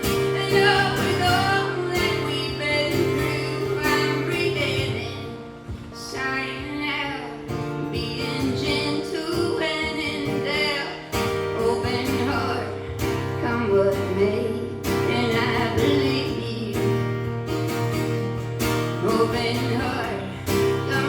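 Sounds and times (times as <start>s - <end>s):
acoustic guitar playing: 0.0s - 21.0s
person singing: 6.0s - 17.0s, 19.0s - 21.0s.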